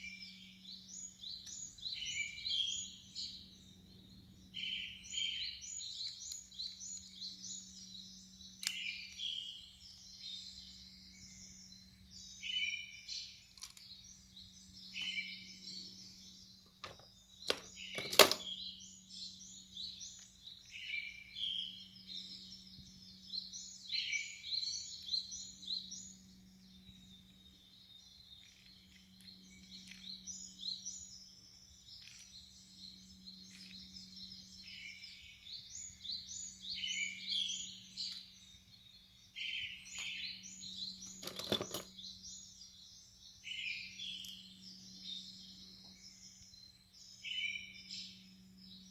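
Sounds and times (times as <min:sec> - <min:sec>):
songbirds chirping and singing: 0:00.0 - 0:48.9
sharp clicks: 0:16.8 - 0:18.5.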